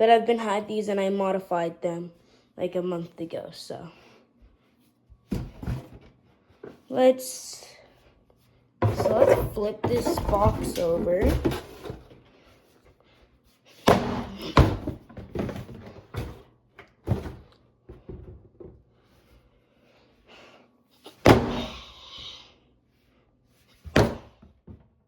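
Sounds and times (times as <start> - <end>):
box knocking and thudding: 5.3 - 6.0, 8.8 - 12.1, 13.9 - 18.7.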